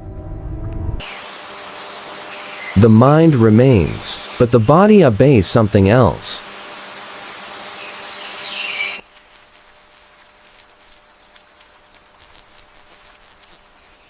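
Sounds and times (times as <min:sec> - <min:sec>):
faint ticks and clicks: 0:09.1 - 0:13.6.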